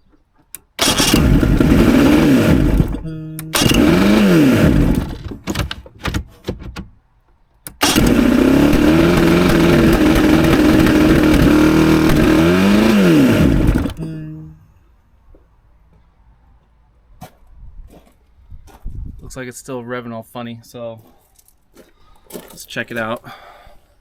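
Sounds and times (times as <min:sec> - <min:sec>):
outboard engine sputtering and revving: 0:00.8 - 0:05.7, 0:07.8 - 0:14.0.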